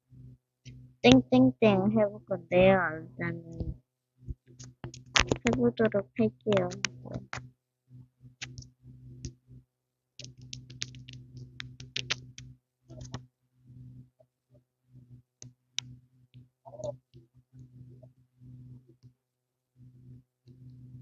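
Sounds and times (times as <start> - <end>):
low electrical hum: 0.0 - 9.6, 10.2 - 14.2, 14.9 - 19.1, 19.7 - 21.0
sharp clicks and taps: 4.6 - 5.7, 6.5 - 7.4, 10.2 - 13.2.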